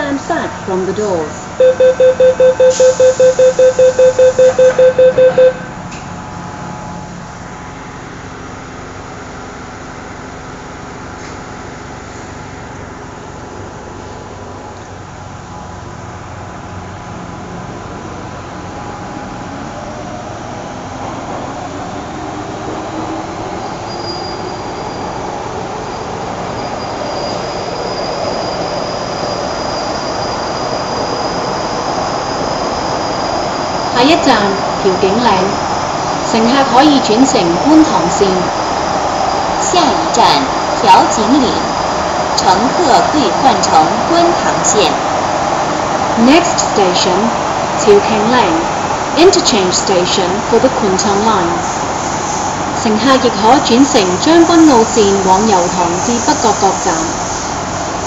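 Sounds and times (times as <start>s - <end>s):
train interior running noise: 0.0s - 58.0s
rapid warning beeps: 1.6s - 5.7s.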